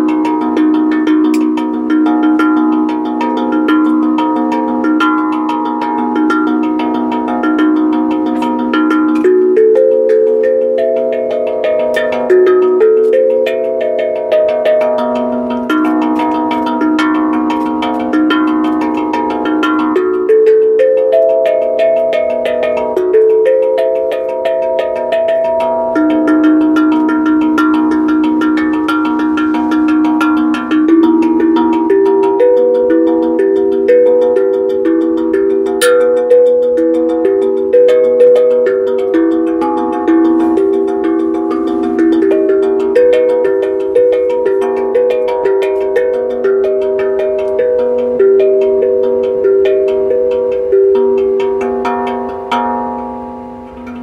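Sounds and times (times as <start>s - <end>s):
ringing percussion melody: 0.0s - 54.0s.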